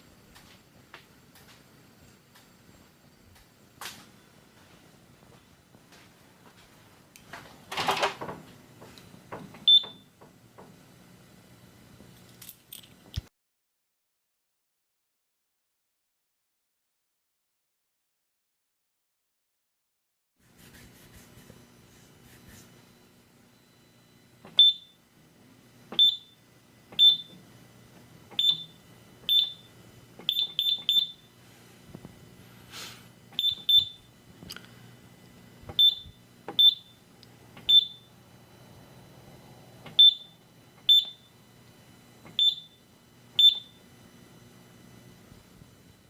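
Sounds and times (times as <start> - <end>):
keypad beeps with clicks: 9.6 - 10.0, 24.5 - 25.0, 26.0 - 26.4, 27.0 - 27.4, 28.4 - 31.3, 33.4 - 34.0, 35.8 - 37.0, 37.7 - 38.1, 40.0 - 40.3, 40.9 - 41.3, 42.3 - 42.8, 43.4 - 43.8.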